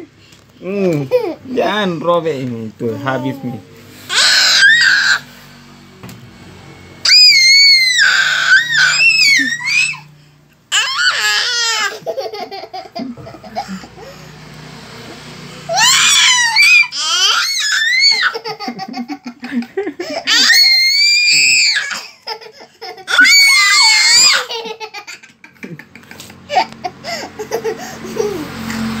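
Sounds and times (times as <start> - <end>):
baby babbling: 2.8 - 4.3
children shrieking: 2.8 - 5.4, 7.0 - 14.5, 15.6 - 19.2, 20.0 - 25.2.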